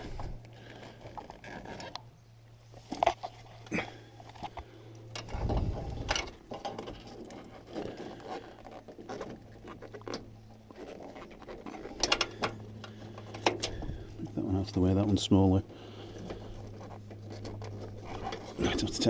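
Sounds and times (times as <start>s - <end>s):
steady low hum: 0.0s - 19.0s
plastic connectors clicking and scraping: 16.1s - 19.0s.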